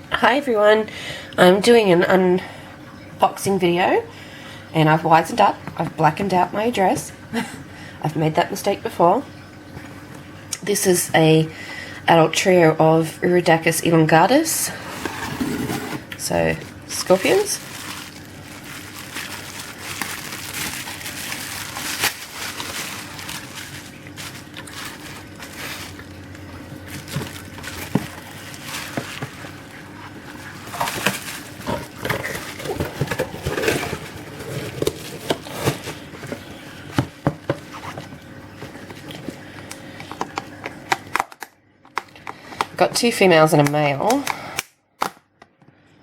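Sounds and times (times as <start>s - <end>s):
faint steady hum: 0.0s - 46.0s
package rustling and crinkling: 15.0s - 39.4s.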